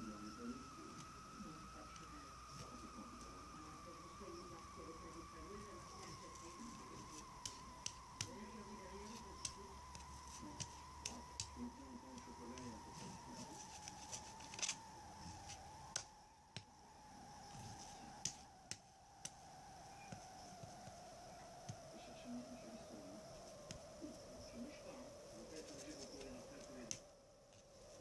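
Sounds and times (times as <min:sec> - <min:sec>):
faint steady whine: 0:00.0 - 0:28.0
sharp clicks: 0:06.0 - 0:13.1.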